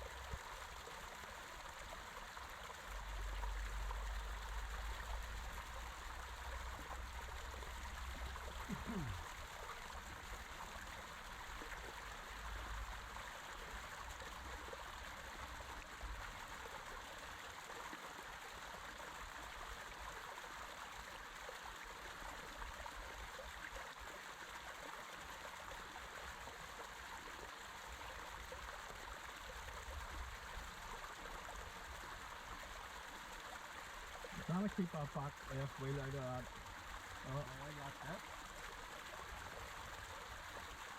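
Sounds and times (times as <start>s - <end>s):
creek water running: 0.0s - 40.9s.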